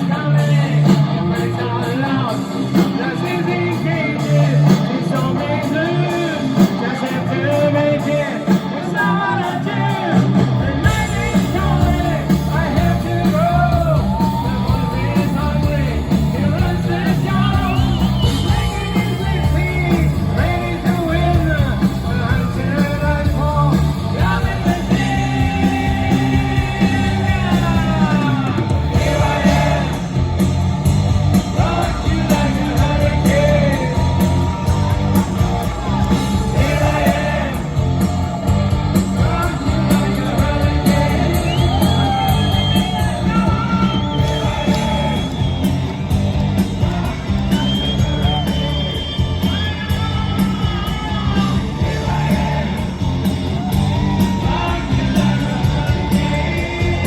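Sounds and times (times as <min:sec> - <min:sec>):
person singing: 0:00.0 - 0:30.2, 0:54.0 - 0:57.0
live hard rock band: 0:00.0 - 0:57.0.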